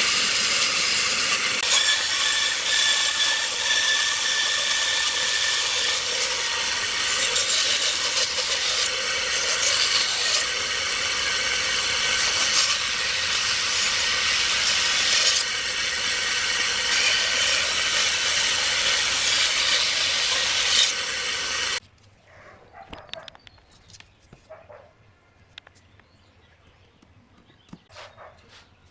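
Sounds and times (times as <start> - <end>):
power tool cutting wood: 0.0 - 21.8.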